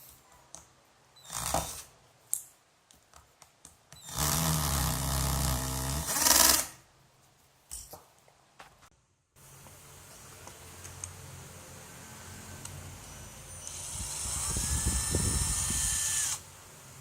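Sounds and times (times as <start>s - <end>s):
cordless drill running: 1.2s - 1.9s, 4.0s - 6.7s, 13.5s - 16.4s
drill clicks: 13.6s - 16.4s.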